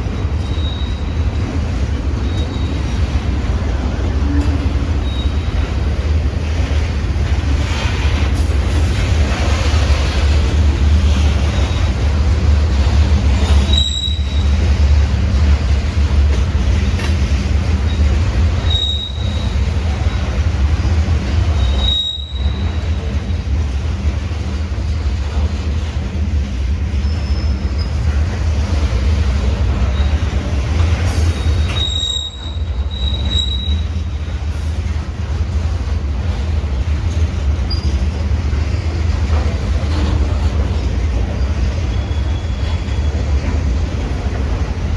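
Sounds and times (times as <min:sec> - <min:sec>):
freight train rumbling past: 0:00.0 - 0:44.9
high-pitched wheel squeals: 0:00.4 - 0:01.2, 0:05.0 - 0:05.6, 0:13.5 - 0:14.6, 0:17.9 - 0:20.3, 0:21.5 - 0:23.0, 0:31.2 - 0:34.1.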